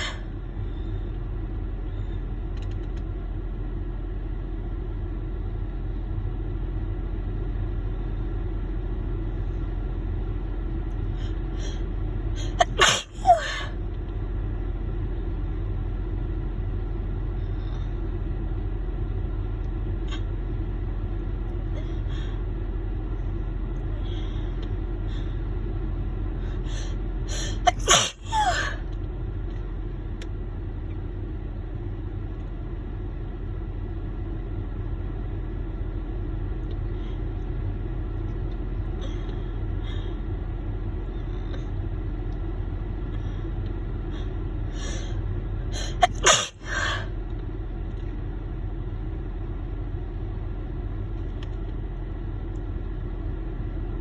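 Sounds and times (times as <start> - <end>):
low car hum: 0.0 - 54.0
woman sneezing: 12.4 - 13.7, 27.3 - 28.8, 45.8 - 47.0
short catching breaths: 26.4 - 28.8.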